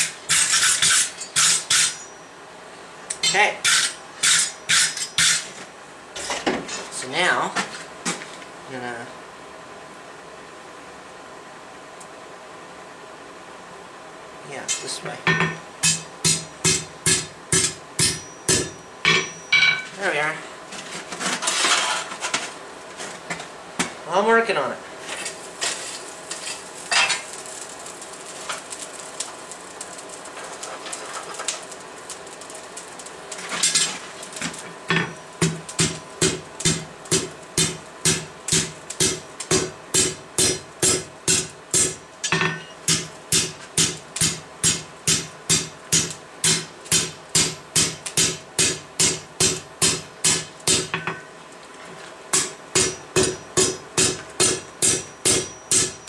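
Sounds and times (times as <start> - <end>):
hammer ringing on anvil: 15.3 - 19.9, 52.4 - 56.0.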